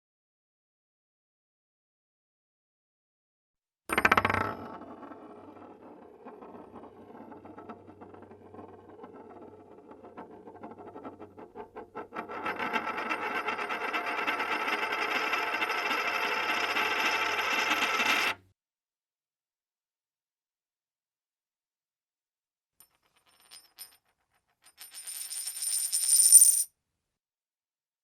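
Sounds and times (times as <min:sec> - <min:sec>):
coins dropping on hard surface: 0:22.8 - 0:26.7.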